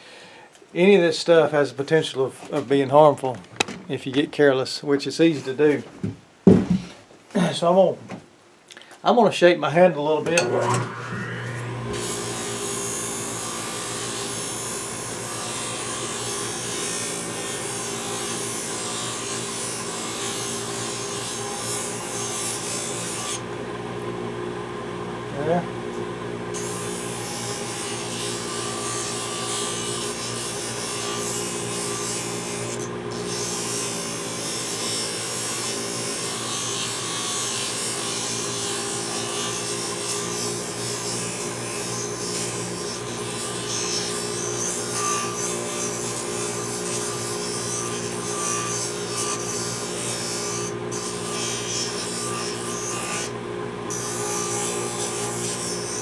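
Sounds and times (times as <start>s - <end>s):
sander motor hum: 10.2s - 19.9s
wood grinding on sanding drum: 10.3s - 23.4s.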